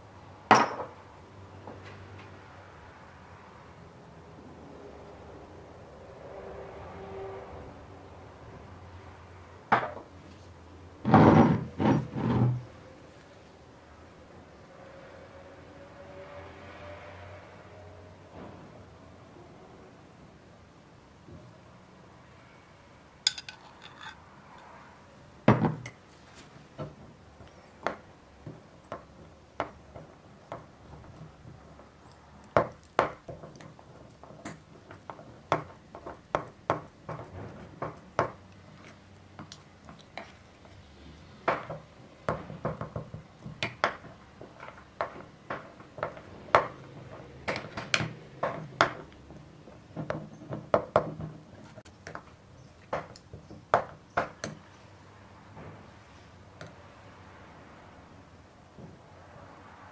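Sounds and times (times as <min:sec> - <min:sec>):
hard objects knocking and clinking: 0:23.3 - 0:24.2.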